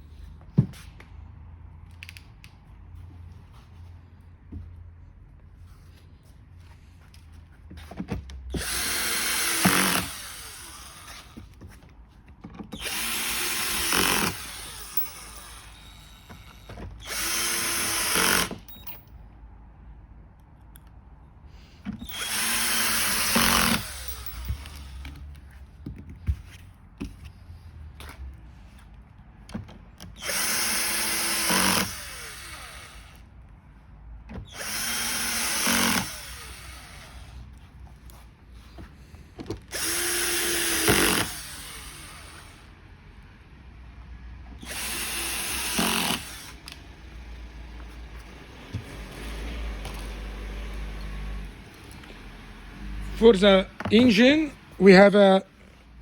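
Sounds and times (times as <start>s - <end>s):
cordless drill motor whine: 8.5s - 11.6s, 12.7s - 19.0s, 22.0s - 25.2s, 30.2s - 33.2s, 34.4s - 37.4s, 39.7s - 42.8s, 44.6s - 46.9s.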